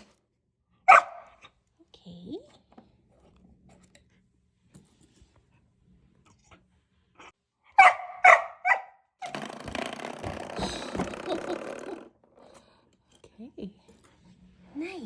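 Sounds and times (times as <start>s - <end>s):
dog barking: 0.9s - 1.4s, 7.7s - 9.0s.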